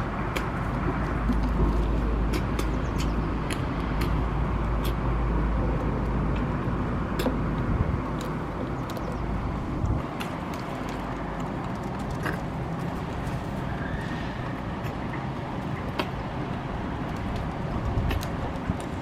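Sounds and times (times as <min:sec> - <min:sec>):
city traffic hum: 0:00.0 - 0:19.0.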